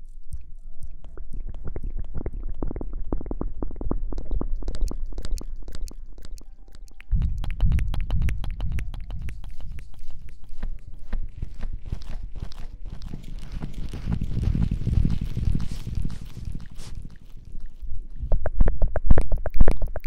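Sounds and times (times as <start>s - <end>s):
low rumble: 7.1s - 19.3s
rubbing and scratching on microphone: 7.1s - 20.0s.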